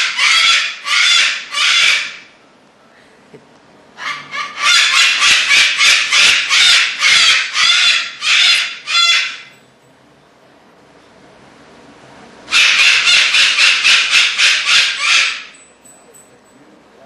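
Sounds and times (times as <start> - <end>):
cockatoo screeching: 0.0 - 2.3, 4.0 - 9.5, 12.5 - 15.6.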